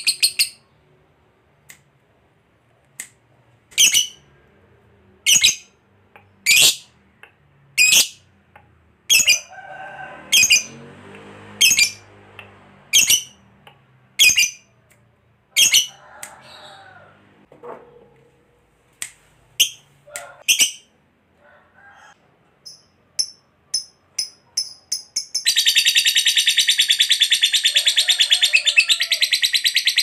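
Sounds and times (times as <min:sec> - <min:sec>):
lovebird shrill calls: 0:12.9 - 0:13.4.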